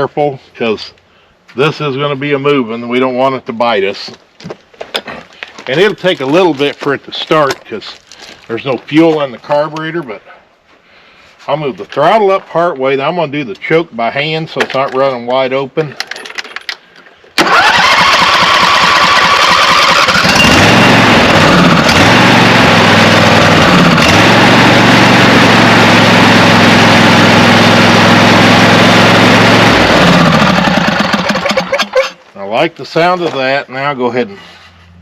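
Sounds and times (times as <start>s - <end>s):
electric starter cranking: 17.4s - 27.9s, 28.5s - 32.0s
lawn tractor engine running: 17.4s - 32.0s.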